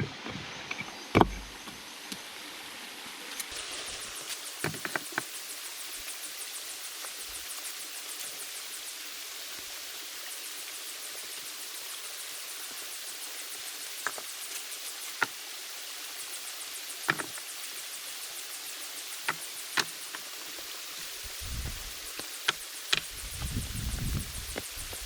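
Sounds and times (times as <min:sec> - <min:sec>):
steady rain: 0:01.8 - 0:25.0.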